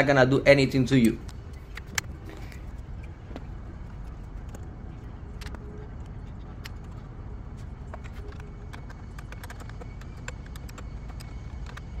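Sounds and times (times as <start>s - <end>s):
low background rumble: 0.0s - 12.0s
wrench clicks and taps: 8.0s - 12.0s.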